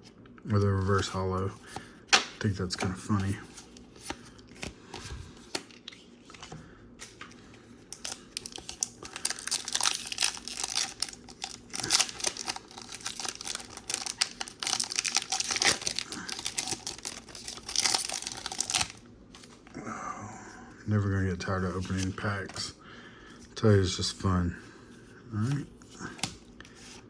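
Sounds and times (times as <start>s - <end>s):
wrapper crinkling and tearing: 7.9s - 19.5s.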